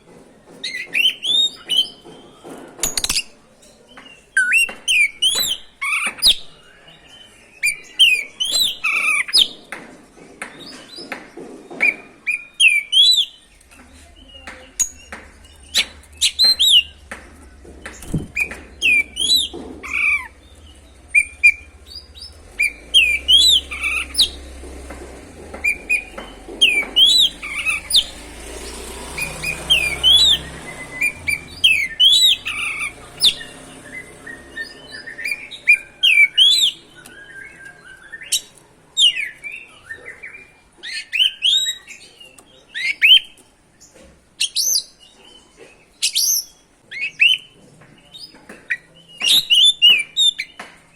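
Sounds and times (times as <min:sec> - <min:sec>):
bird singing whistled notes: 0:18.0 - 0:24.5, 0:25.6 - 0:28.2, 0:29.1 - 0:42.1.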